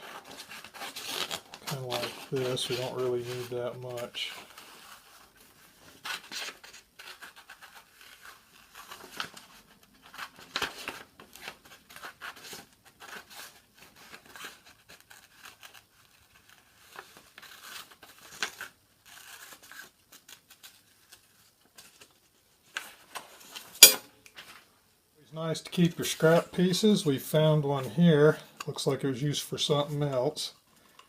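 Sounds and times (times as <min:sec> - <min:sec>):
paper sheet rustling: 0:00.0 - 0:23.8.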